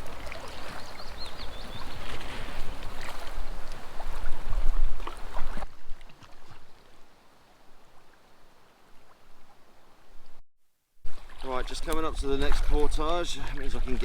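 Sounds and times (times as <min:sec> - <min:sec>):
wind rumbling on microphone: 0:00.0 - 0:06.8
paddle splashing water: 0:00.0 - 0:10.4, 0:11.0 - 0:14.0.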